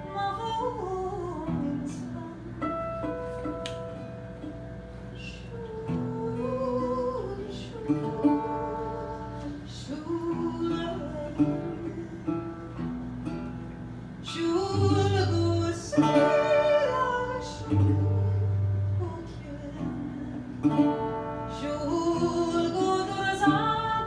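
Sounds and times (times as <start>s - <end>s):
acoustic guitar: 0.0s - 24.0s
person singing: 5.2s - 12.8s, 14.2s - 24.0s.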